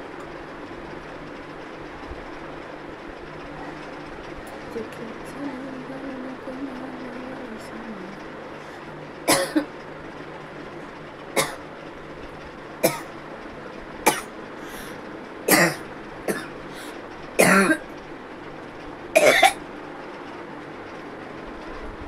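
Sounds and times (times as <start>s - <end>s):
person coughing: 9.3s - 9.7s, 12.8s - 13.1s, 15.5s - 16.5s, 17.4s - 17.8s, 19.2s - 19.6s.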